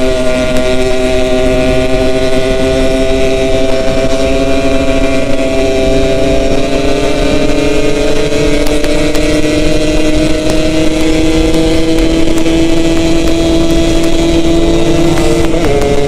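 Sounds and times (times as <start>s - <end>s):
two-stroke motorcycle engine running: 0.0s - 16.0s.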